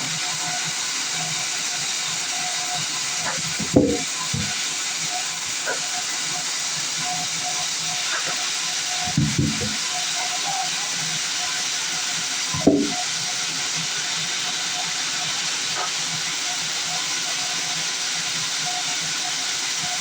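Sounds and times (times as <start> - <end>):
sawmill machinery hissing: 0.0 - 20.0
dull thumps: 9.1 - 9.8, 12.6 - 13.0.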